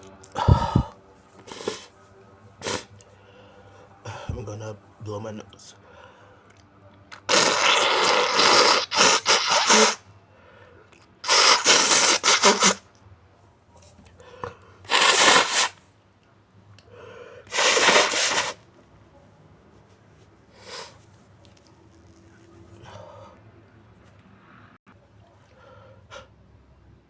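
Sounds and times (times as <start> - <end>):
person blowing nose: 0.4 - 2.0, 2.6 - 3.0, 7.2 - 10.0, 11.2 - 12.9, 14.9 - 15.8, 17.5 - 18.6, 20.5 - 21.0.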